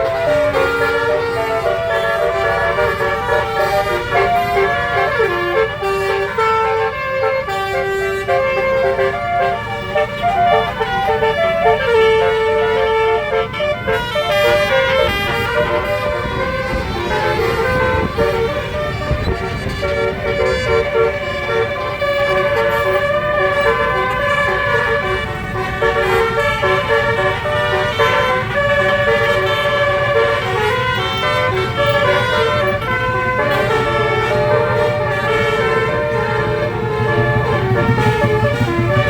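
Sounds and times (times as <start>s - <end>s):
bus horn playing stepped notes: 0.0s - 39.0s
low road rumble: 0.0s - 39.0s.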